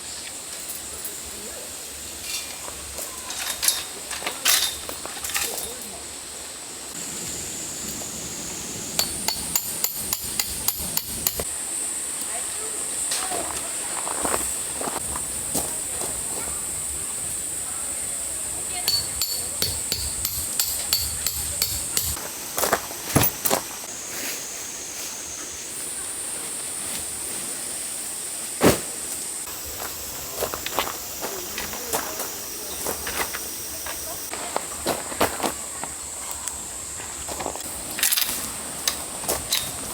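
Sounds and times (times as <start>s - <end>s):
insects droning: 0.0s - 39.9s
hammer striking metal: 9.0s - 11.4s, 18.8s - 22.2s.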